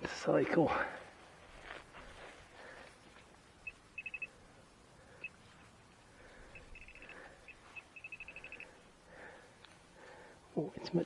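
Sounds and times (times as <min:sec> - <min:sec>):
metal detector beeps: 0:03.6 - 0:04.3, 0:06.5 - 0:08.7.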